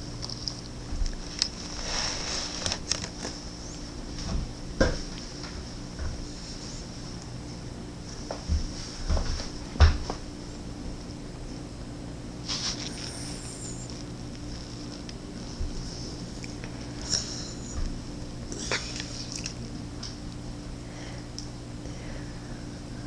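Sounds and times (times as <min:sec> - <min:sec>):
steady low hum: 0:00.0 - 0:23.0
dog mouth smacks and clicks: 0:18.9 - 0:19.6.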